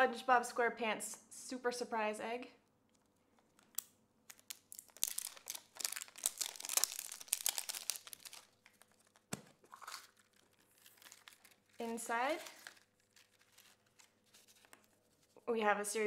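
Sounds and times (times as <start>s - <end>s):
wrapper crinkling and tearing: 3.0s - 15.4s.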